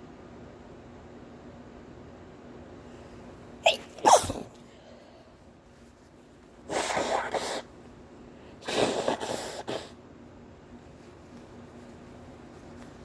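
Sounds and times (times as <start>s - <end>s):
person sneezing: 3.6s - 4.6s, 6.7s - 7.7s, 8.6s - 10.0s.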